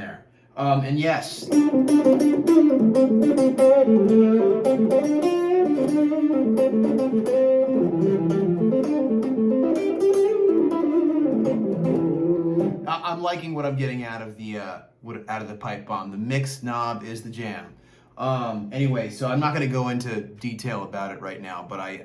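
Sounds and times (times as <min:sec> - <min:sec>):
electric guitar single-note phrases: 0:01.4 - 0:12.9.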